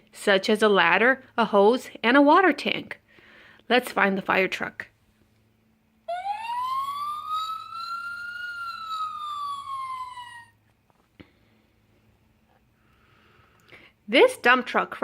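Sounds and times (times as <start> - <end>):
siren wail sound effect: 6.1 - 10.6.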